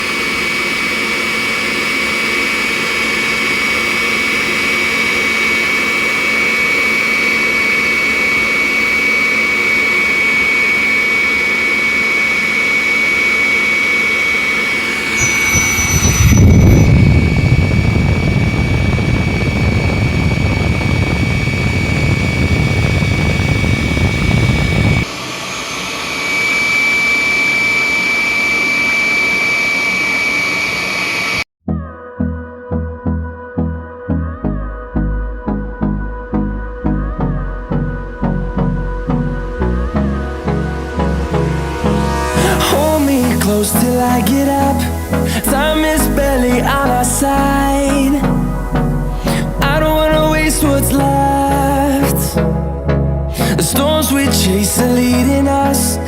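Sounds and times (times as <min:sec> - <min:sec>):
vacuum cleaner motor whine: 0:00.0 - 0:31.5.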